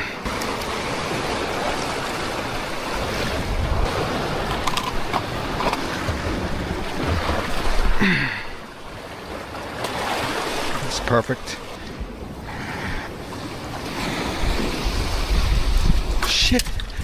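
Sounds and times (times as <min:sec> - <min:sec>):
sea waves: 0:00.0 - 0:17.0
wind on microphone: 0:00.3 - 0:08.0, 0:13.8 - 0:17.0.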